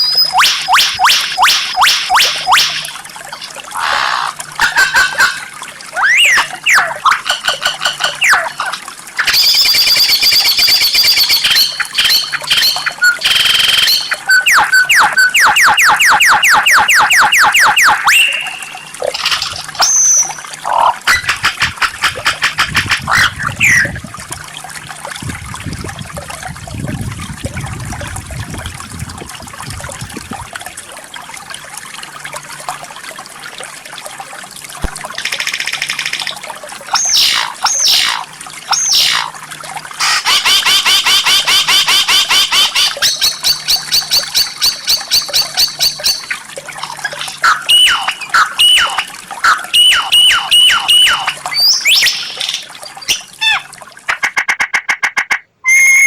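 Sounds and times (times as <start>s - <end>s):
bird whistled song: 0.0s - 2.7s, 6.0s - 7.2s, 9.2s - 20.4s, 23.1s - 23.9s, 47.4s - 53.6s, 55.6s - 56.0s
bird rapid rattling trill: 9.2s - 23.8s.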